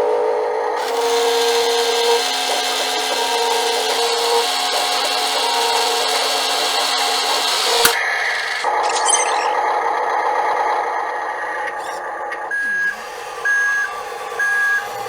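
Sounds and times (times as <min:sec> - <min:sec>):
small electric motor whining: 0:00.8 - 0:08.0
sharp click: 0:08.8 - 0:09.6.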